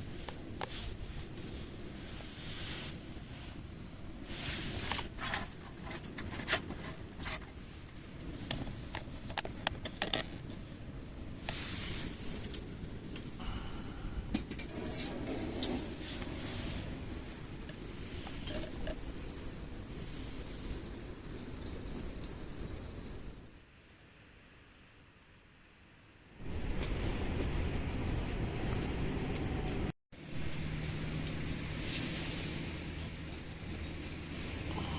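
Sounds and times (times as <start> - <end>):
wind rumbling on microphone: 0.0 - 23.7, 26.3 - 34.9.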